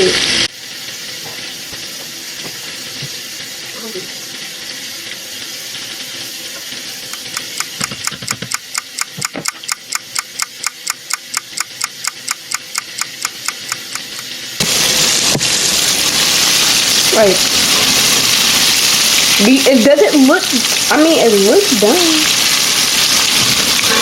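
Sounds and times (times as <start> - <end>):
food deep-frying sizzle: 0.0 - 24.0
fast even clicking: 7.1 - 14.3.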